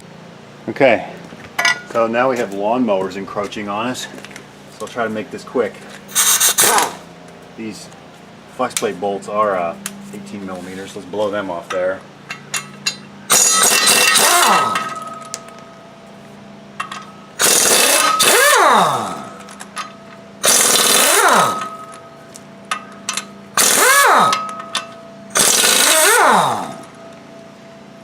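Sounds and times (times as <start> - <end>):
impact wrench hammering: 12.3 - 15.6, 16.8 - 27.2.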